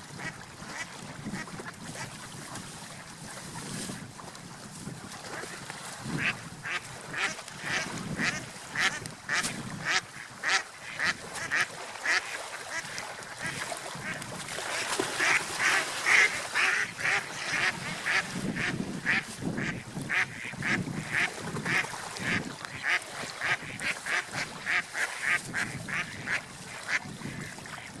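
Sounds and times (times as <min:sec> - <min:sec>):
ducks quacking rapidly: 0:06.2 - 0:14.2, 0:15.1 - 0:28.0.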